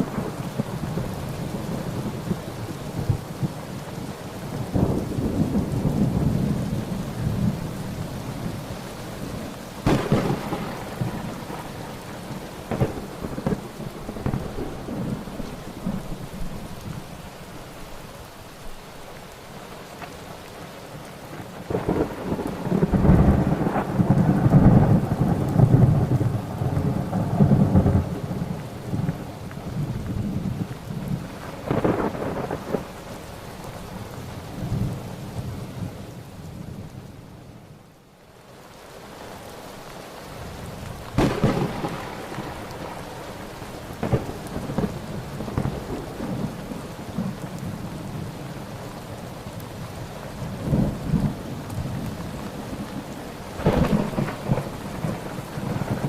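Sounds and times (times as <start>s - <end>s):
steady rain: 0.0s - 56.0s
sharp thunderclap: 9.8s - 11.6s, 12.7s - 15.3s, 41.2s - 42.7s, 44.0s - 46.6s, 53.6s - 56.0s
rolling thunder: 9.8s - 16.6s, 21.6s - 33.0s, 41.2s - 47.9s, 50.5s - 56.0s.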